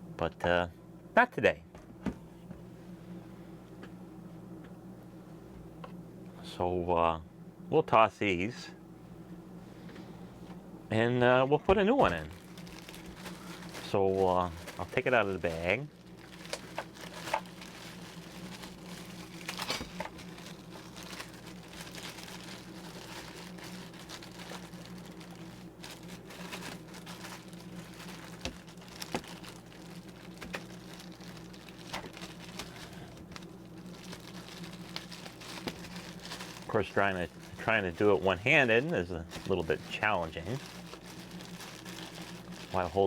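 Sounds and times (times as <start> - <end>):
steady low hum: 0.0 - 43.0
plastic bag crinkling: 11.7 - 43.0.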